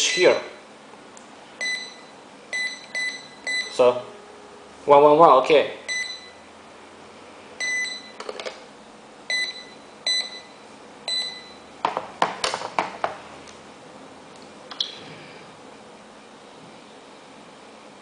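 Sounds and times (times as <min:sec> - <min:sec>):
keypad beeping: 0:09.3 - 0:10.5, 0:11.1 - 0:11.6.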